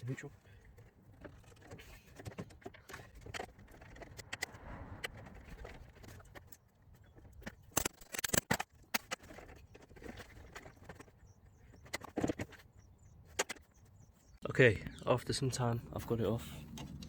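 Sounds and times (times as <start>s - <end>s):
tools clicking and knocking on metal: 7.2s - 12.6s.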